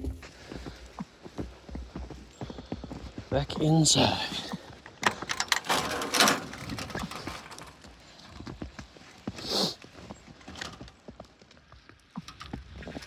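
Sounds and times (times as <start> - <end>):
footsteps crunching through snow: 0.0 - 3.2
scraping rustle: 5.5 - 8.0.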